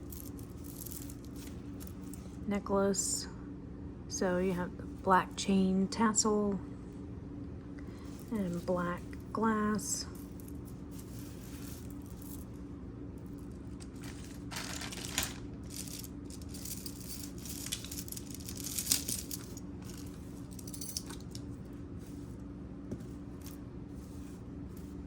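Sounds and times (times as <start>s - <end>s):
necklace beads and chain clinking: 0.0s - 2.4s, 8.0s - 12.6s, 13.2s - 21.5s
steady low hum: 0.0s - 25.0s.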